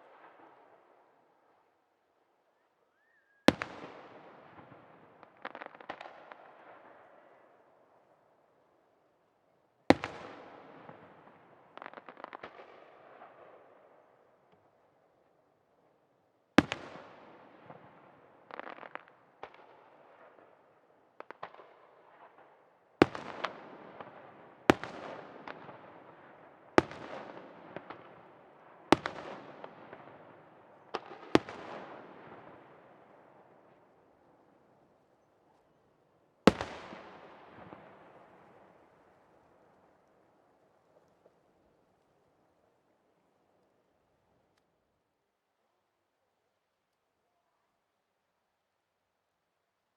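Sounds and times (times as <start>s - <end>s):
small crackling pops: 36.5s - 42.5s, 44.4s - 44.8s.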